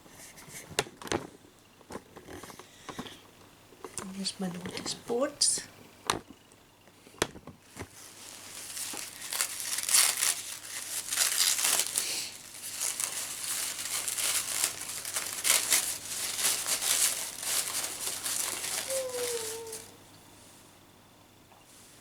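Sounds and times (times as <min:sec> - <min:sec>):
wrapping paper crinkling: 0:07.6 - 0:20.0.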